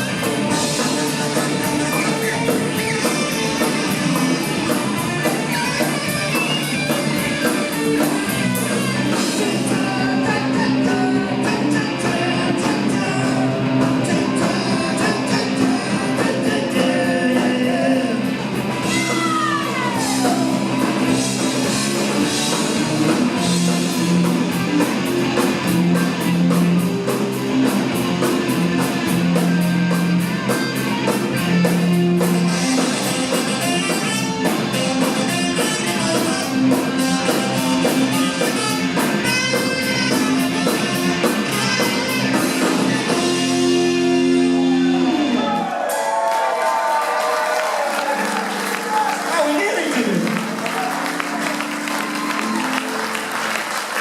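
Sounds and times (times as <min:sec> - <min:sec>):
drums on a steady beat: 0:00.0 - 0:46.1
electric guitar: 0:00.0 - 0:46.2, 0:46.8 - 0:54.0
bass guitar: 0:00.0 - 0:46.3, 0:47.1 - 0:54.0
person singing: 0:09.0 - 0:20.7.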